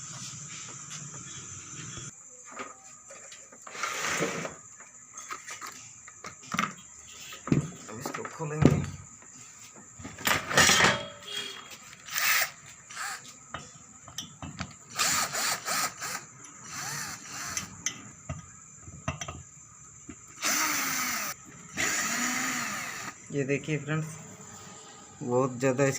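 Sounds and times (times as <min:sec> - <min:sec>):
electric screwdriver running: 0:20.4 - 0:23.2.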